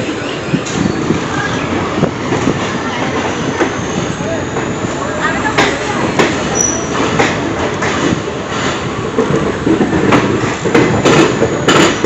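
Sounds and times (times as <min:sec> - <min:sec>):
train running rumble: 0:00.0 - 0:12.0
train wheels knocking over rail joints: 0:05.4 - 0:12.0.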